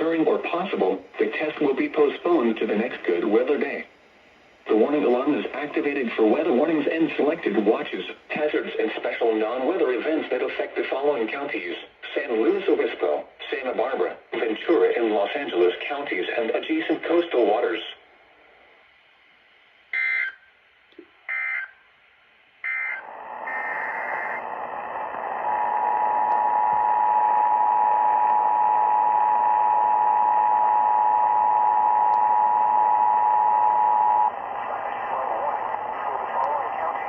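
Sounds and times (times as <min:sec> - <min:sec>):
radio hiss: 0:00.0 - 0:19.9, 0:22.5 - 0:37.0
steady alarm tone: 0:20.0 - 0:20.4, 0:22.6 - 0:34.4
digital data bursts: 0:22.7 - 0:24.5.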